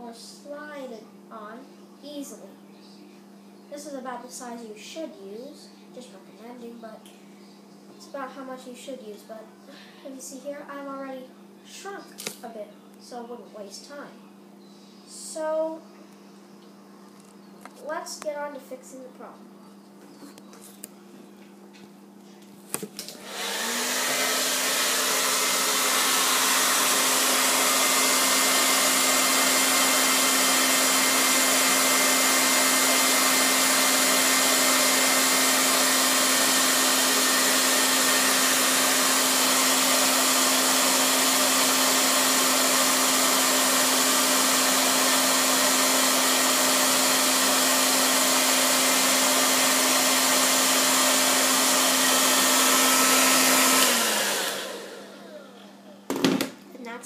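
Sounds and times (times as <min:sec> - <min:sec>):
hair dryer running: 0:22.8 - 0:56.6.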